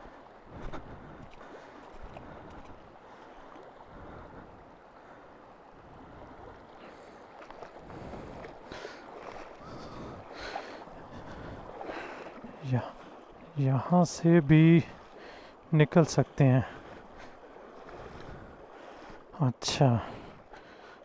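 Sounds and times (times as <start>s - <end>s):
wind buffeting microphone: 7.7s - 12.0s.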